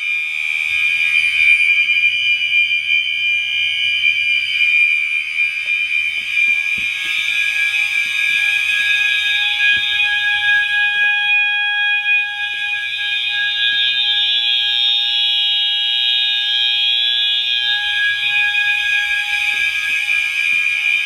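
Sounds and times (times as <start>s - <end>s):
low fire alarm horn tone: 7.1s - 21.0s.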